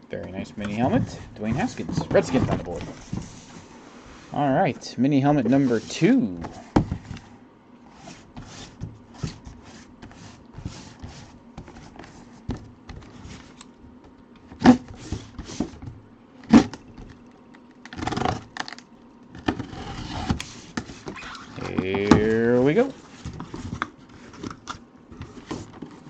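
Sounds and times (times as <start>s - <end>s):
cardboard box scraping and rustling: 0.8s - 4.4s.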